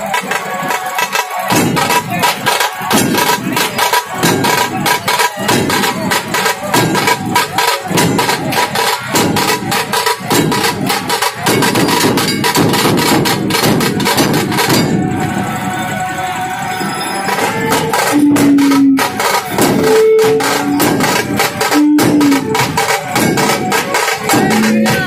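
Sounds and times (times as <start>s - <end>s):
fast dense drumming: 0.0s - 15.4s, 17.3s - 25.0s
held tone: 16.7s - 25.0s.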